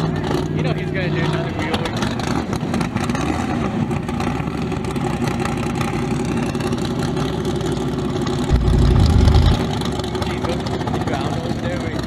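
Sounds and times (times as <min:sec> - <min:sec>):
race car engines idling: 0:00.0 - 0:12.0.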